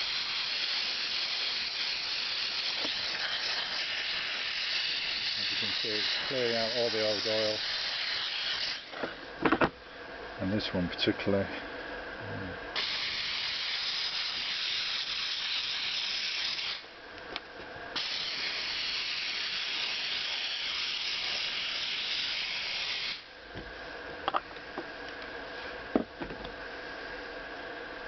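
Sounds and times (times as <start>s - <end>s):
steam cleaner hissing: 0.0s - 9.3s, 12.7s - 16.9s, 17.9s - 23.3s.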